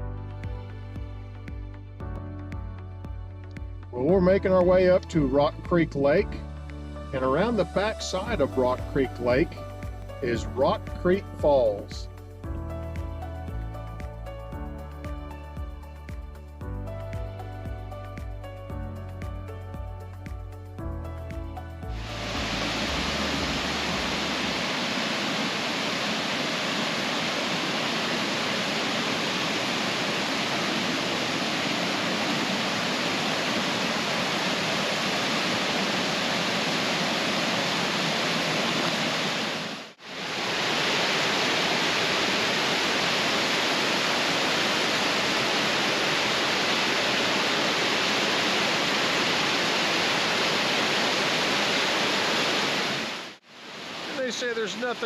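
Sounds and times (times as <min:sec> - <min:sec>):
waterfall roar: 0:21.9 - 0:55.0.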